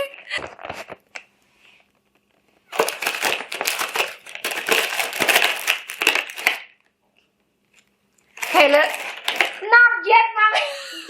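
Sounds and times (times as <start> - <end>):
snack packaging crinkling: 2.1 - 7.0, 7.6 - 9.7.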